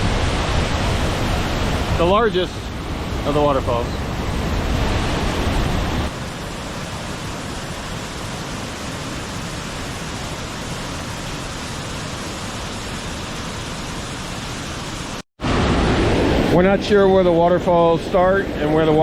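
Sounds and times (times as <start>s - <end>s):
waterfall rushing: 0.0s - 17.1s.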